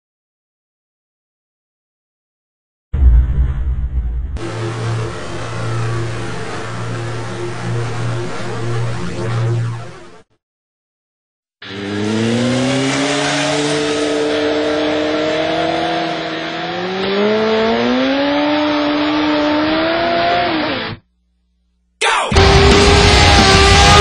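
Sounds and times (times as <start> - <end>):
motorcycle engine revving high: 11.6 - 20.9, 22.4 - 24.0.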